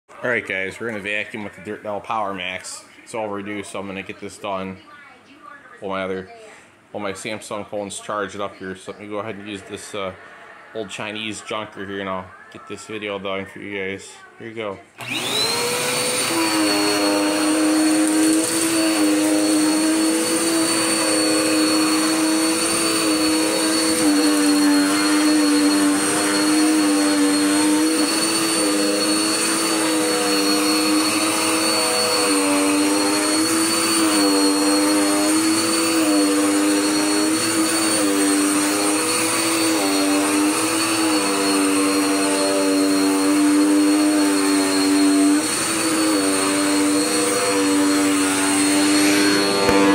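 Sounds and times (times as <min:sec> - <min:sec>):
vacuum cleaner running: 0:15.0 - 0:49.9.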